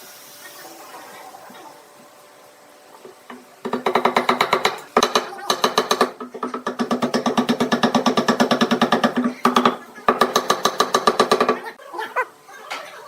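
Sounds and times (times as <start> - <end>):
power tool hammering: 3.6 - 11.6.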